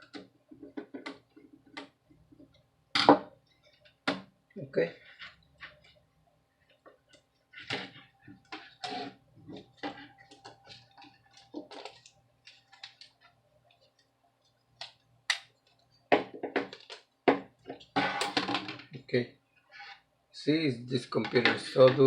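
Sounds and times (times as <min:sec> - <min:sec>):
clicks of laptop parts handled: 0:18.2 - 0:18.6.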